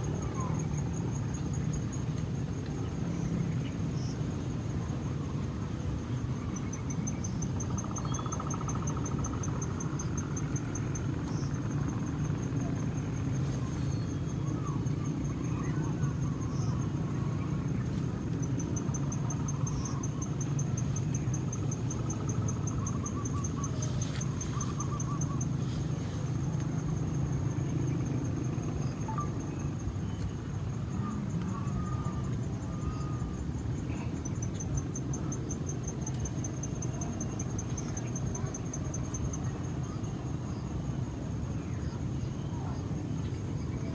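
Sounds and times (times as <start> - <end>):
insect trilling: 5.2 - 30.1.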